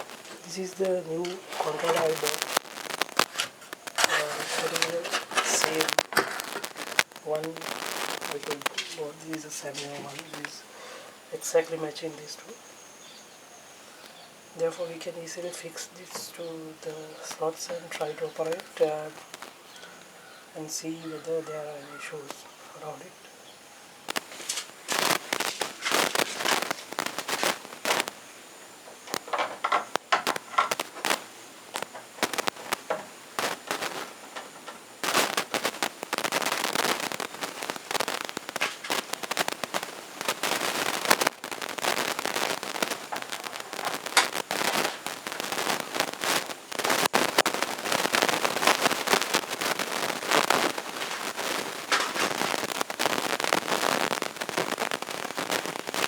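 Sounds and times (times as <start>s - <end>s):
plastic parts and wiring clicking: 0.0s - 10.6s, 28.8s - 36.6s.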